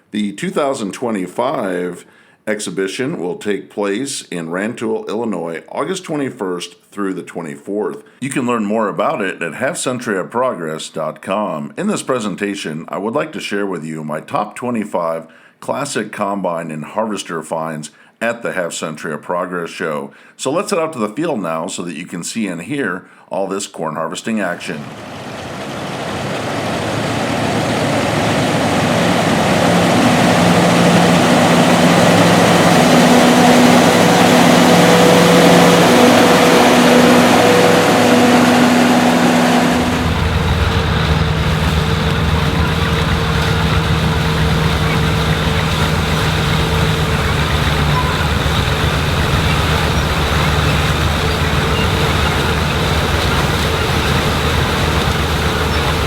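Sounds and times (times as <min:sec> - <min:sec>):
combine harvester running: 0:24.8 - 0:56.0.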